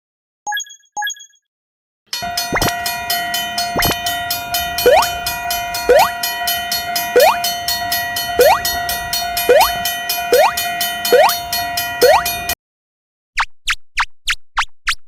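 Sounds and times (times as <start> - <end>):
railroad crossing alarm ringing: 2.1 - 12.6
steady electronic tones: 3.7 - 12.5
cartoon rising-swoop effects: 4.8 - 5.1, 5.9 - 6.1, 7.2 - 7.4, 8.4 - 8.6, 9.5 - 11.4, 12.0 - 12.3.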